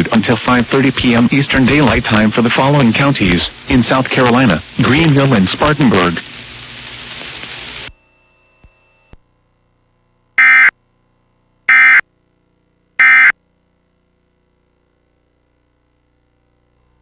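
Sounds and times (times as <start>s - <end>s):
radio hiss: 0.0s - 8.0s
buzzing digital data tones: 10.4s - 10.7s, 13.0s - 13.3s.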